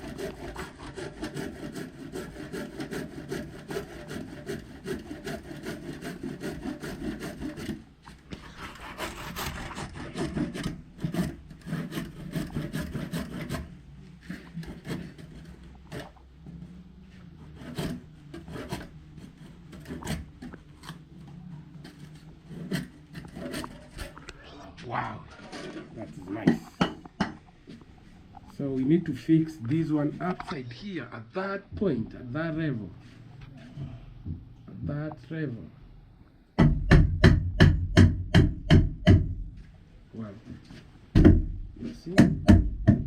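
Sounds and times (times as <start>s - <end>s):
handsaw cutting wood: 0.0s - 16.1s, 17.4s - 21.1s, 21.8s - 24.2s
knocks on wood: 36.6s - 39.4s, 41.1s - 43.0s.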